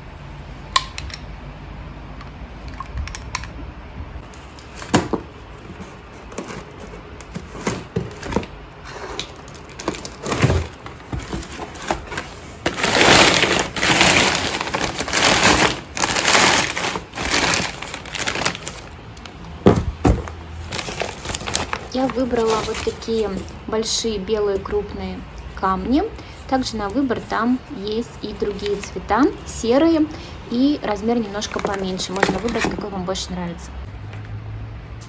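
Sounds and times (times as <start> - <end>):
packaging crunching and crackling: 9.2 - 19.5, 20.3 - 23.2.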